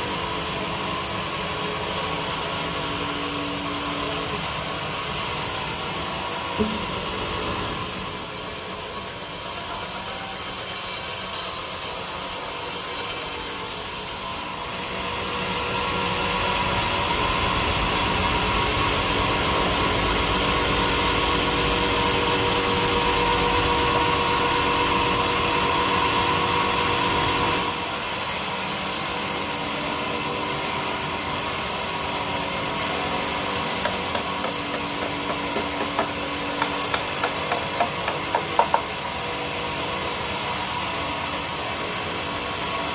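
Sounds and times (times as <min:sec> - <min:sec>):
power tool on wood: 0:27.6 - 0:42.3.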